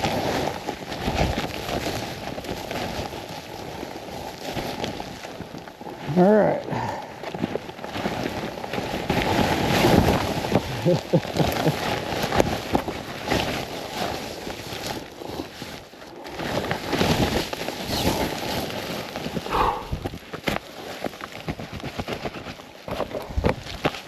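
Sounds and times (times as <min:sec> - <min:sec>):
person breathing hard: 0:06.7 - 0:07.3, 0:19.4 - 0:20.2, 0:23.0 - 0:23.6
snowshoes trudging through snow: 0:07.5 - 0:24.0
wind on microphone: 0:19.4 - 0:20.2.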